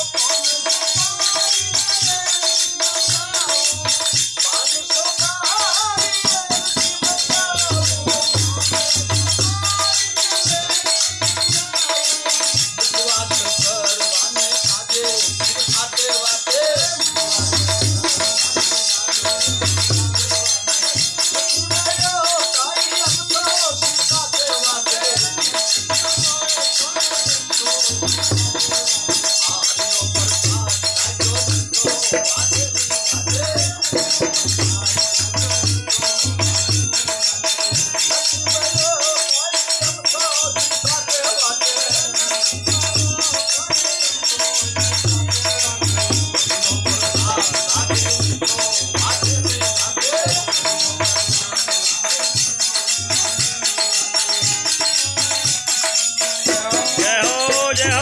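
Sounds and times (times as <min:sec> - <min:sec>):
jingling hand percussion: 0:00.0 - 0:58.0
wavering melodic line: 0:56.5 - 0:58.0.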